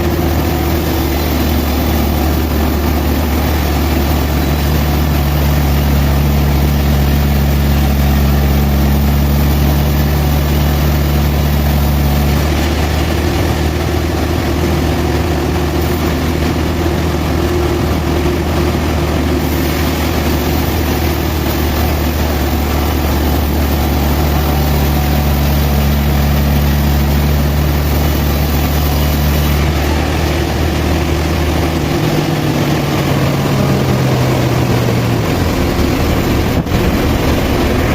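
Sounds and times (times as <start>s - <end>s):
sawmill engine humming: 0.0s - 37.9s.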